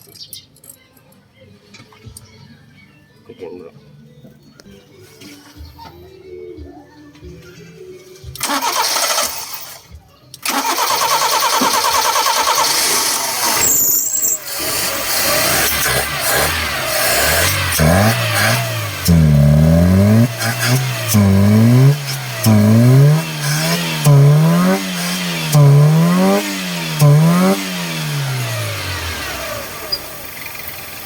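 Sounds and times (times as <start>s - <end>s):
engine starter cranking: 8.4s - 31.0s
car engine revving: 10.5s - 31.0s.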